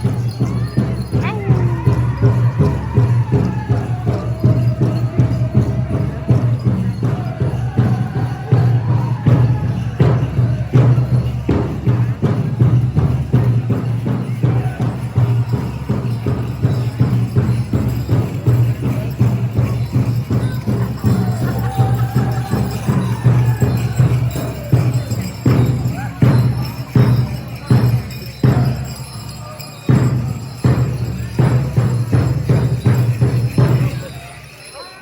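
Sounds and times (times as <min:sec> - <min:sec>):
big drum steady beat: 0:00.0 - 0:34.4
jingling: 0:00.0 - 0:35.0
group singing high wavering song: 0:01.5 - 0:10.9, 0:20.6 - 0:24.8.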